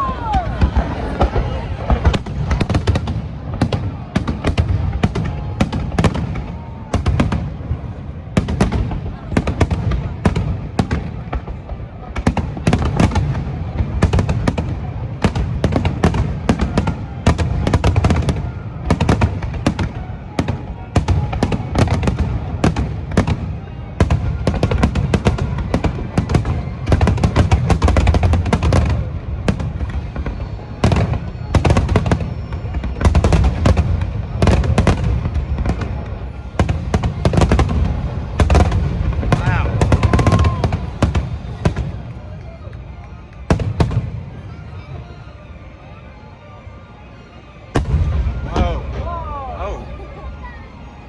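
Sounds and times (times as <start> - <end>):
music playing: 0.0 - 2.2, 35.3 - 51.0
firework crackle: 0.0 - 44.9.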